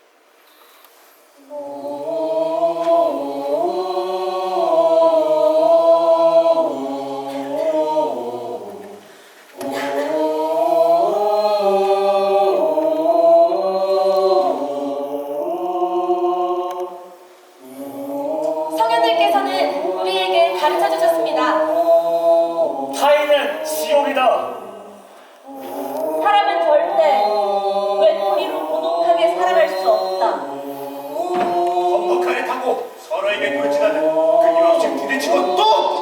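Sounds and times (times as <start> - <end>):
voices singing in harmony: 1.3 - 36.0.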